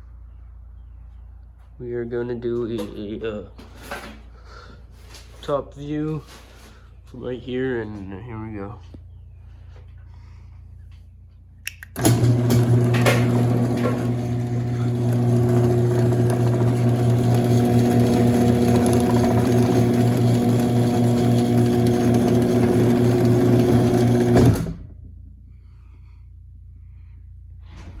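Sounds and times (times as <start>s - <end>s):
garage door opener motor humming: 11.9s - 25.2s.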